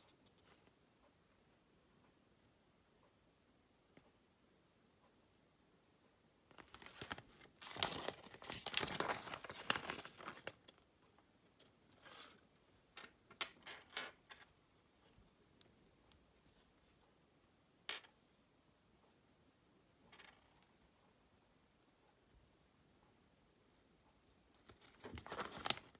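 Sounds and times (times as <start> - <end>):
foil wrapper crinkling: 6.6 - 10.6, 24.9 - 25.9.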